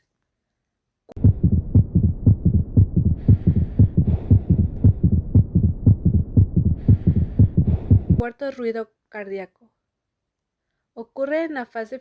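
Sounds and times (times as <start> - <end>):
heartbeat through stethoscope: 1.1 - 8.2.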